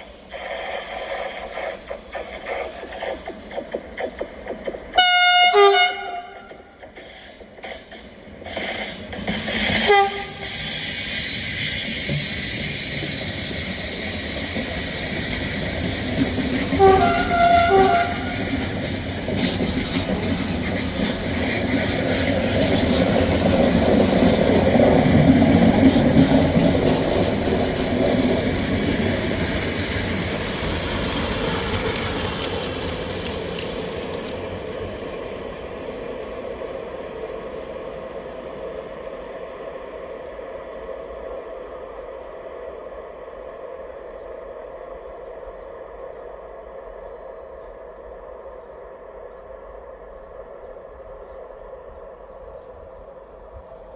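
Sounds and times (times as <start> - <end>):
train rumbling past: 0.0 - 53.9
train horn blasts: 5.0 - 6.8, 9.8 - 10.7, 16.7 - 18.7.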